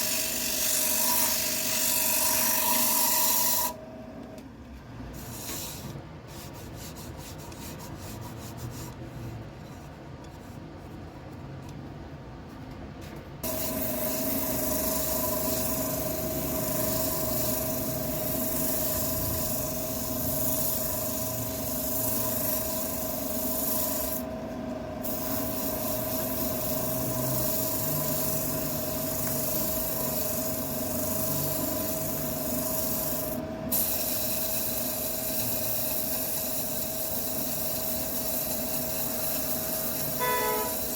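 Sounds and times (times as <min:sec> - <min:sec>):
lathe hum: 0:00.0 - 0:04.3, 0:13.4 - 0:40.9.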